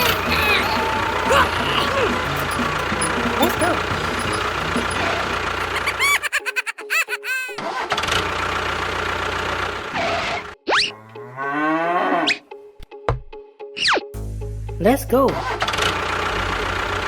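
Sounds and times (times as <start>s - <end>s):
engine revving up: 0.0s - 5.9s
choppy warbling bursts: 0.0s - 6.0s
engine noise: 0.0s - 6.1s, 7.6s - 10.5s.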